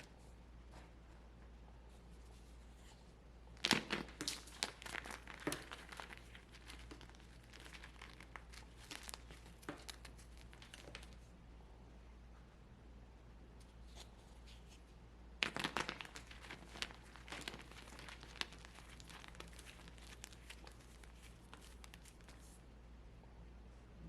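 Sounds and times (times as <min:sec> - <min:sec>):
dry block crushed and crumbling: 0:03.6 - 0:11.2, 0:15.4 - 0:22.5.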